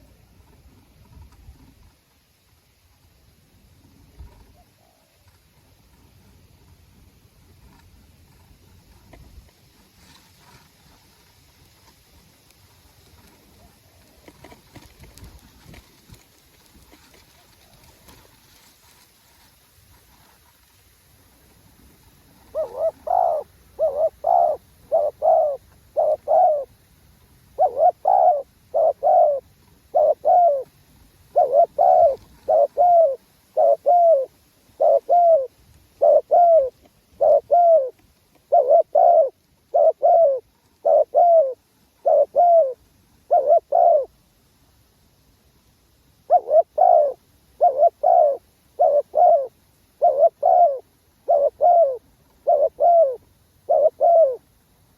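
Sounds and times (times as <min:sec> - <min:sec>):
dove cooing: 0:04.2 - 0:05.4, 0:13.2 - 0:16.2, 0:22.4 - 0:26.8, 0:27.5 - 0:44.2, 0:46.2 - 0:54.4.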